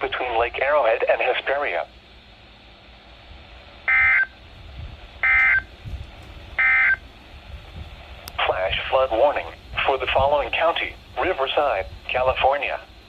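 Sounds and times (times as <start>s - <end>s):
warbling two-tone data squawk: 3.9s - 4.4s, 5.2s - 5.7s, 6.6s - 7.0s.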